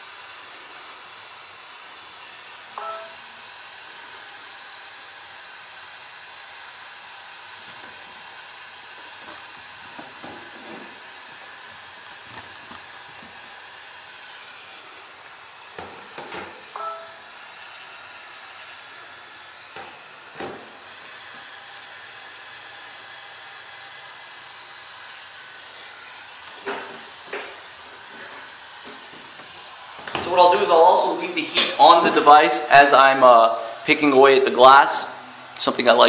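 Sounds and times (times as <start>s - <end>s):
heat gun blowing with hiss: 0.0s - 36.0s
short beeps: 2.8s - 3.2s, 16.8s - 17.2s.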